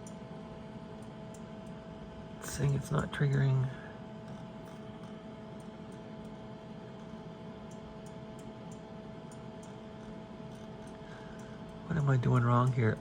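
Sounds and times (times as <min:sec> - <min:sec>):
electronic equipment hum and hiss: 0:00.0 - 0:13.0.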